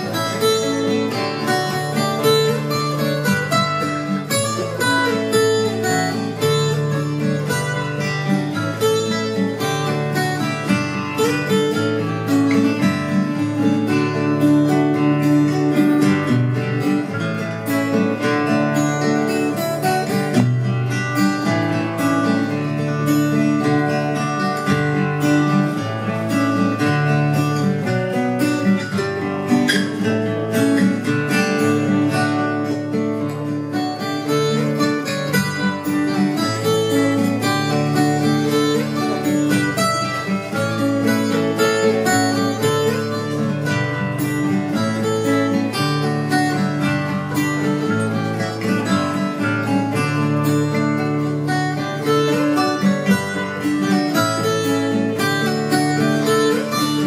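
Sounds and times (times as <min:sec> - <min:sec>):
acoustic guitar music: 0:00.0 - 0:57.0.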